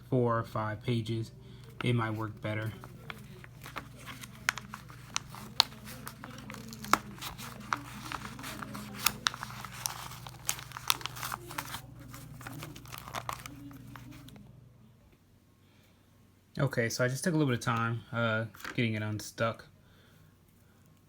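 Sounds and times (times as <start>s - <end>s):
paper rustling and crinkling: 1.6s - 14.4s.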